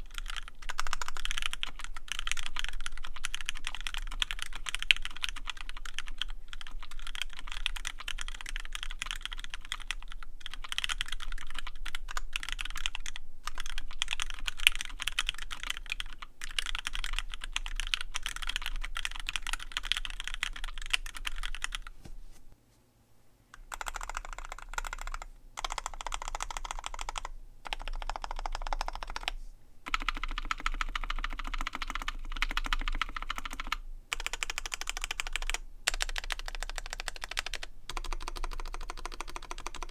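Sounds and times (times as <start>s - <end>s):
mechanical keyboard typing: 0.0s - 21.9s, 23.6s - 39.9s.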